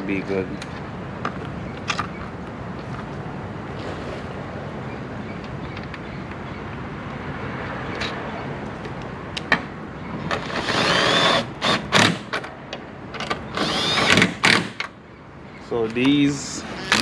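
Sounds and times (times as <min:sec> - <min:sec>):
power drill whining: 0:13.6 - 0:14.2.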